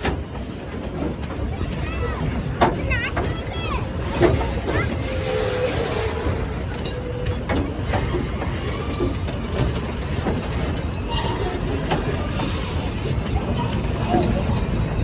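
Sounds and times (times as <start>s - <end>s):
train rumbling: 0.0s - 15.0s.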